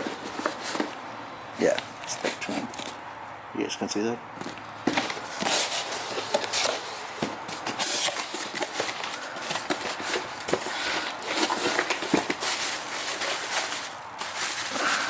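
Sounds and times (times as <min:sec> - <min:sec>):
packaging rustling and crinkling: 0:04.4 - 0:15.0.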